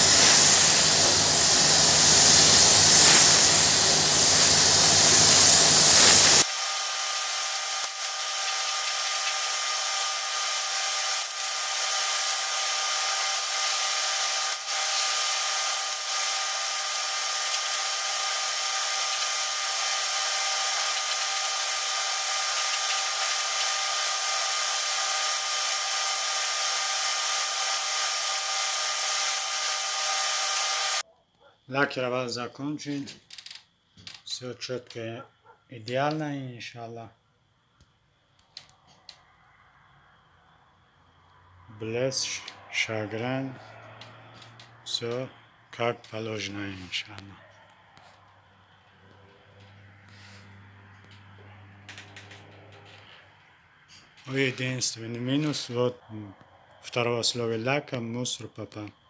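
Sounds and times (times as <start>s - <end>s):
air spray gun hissing: 0.0s - 31.0s.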